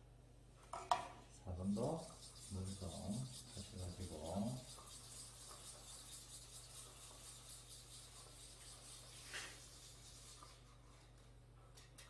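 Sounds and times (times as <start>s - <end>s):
paintbrush strokes on a panel: 1.4s - 11.1s.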